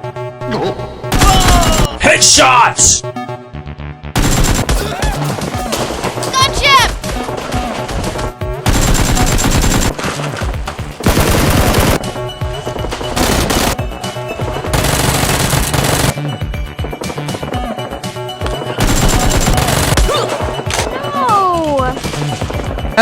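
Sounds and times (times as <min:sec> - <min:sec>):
background music: 0:00.0 - 0:23.0
video game automatic gunfire: 0:04.2 - 0:16.3, 0:18.4 - 0:21.0.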